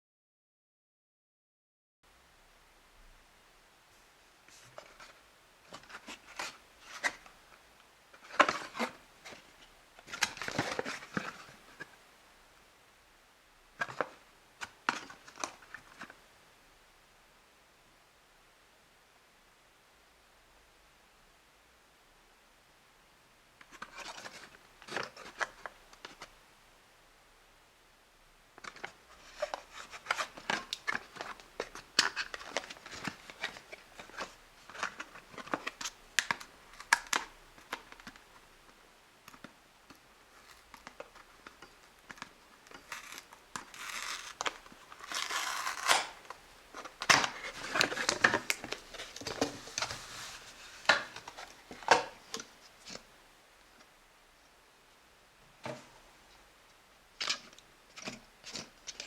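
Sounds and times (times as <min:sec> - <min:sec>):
packaging crinkling and tearing: 0:40.4 - 0:51.4.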